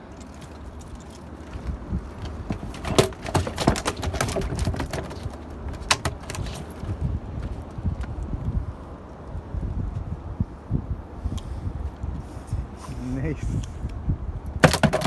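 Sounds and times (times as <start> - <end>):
low steady hum: 0.0 - 15.0
sharp knocks on a boat: 1.6 - 8.0, 14.6 - 15.0.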